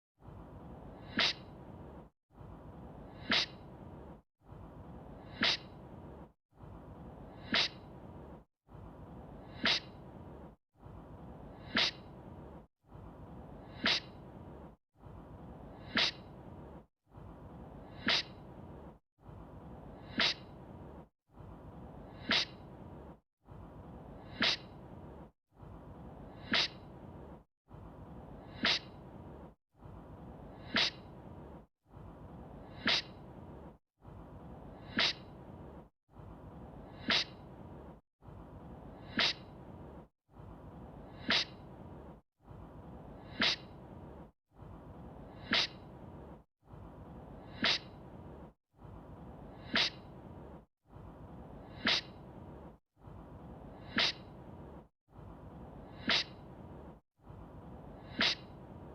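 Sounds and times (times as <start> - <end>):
person sneezing: 3.2 - 3.5, 30.7 - 31.0, 45.5 - 45.7, 47.6 - 47.8, 49.7 - 50.0, 51.8 - 52.0, 54.0 - 54.2, 56.1 - 56.3, 58.2 - 58.4.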